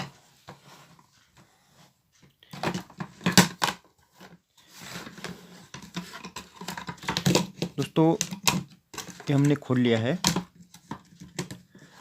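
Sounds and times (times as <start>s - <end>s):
plastic housing clicks and scraping: 2.5s - 12.0s.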